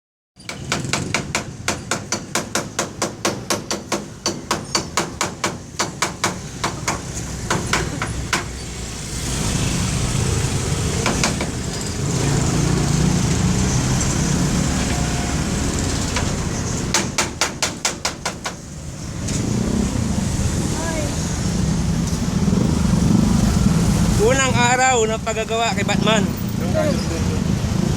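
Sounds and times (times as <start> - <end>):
rapid hammer blows on metal: 0.5 - 8.6, 16.0 - 18.7
low vehicle rumble: 5.5 - 27.9.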